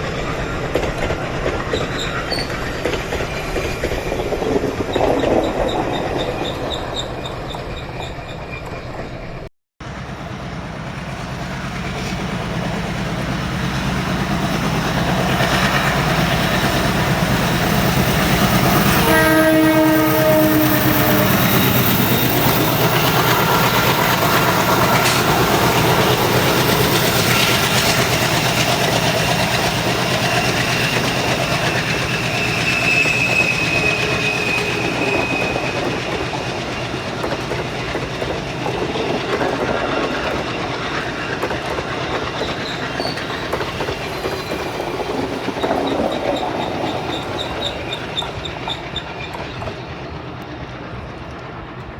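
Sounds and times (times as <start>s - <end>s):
diesel locomotive engine chugging: 0.0s - 51.9s
train coaches clickety-clack: 0.0s - 51.9s
locomotive horn blast: 18.4s - 22.6s.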